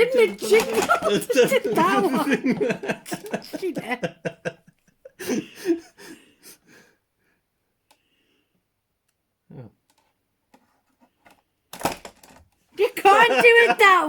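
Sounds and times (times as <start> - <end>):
breathy wheezes or gasps: 5.2 - 7.0.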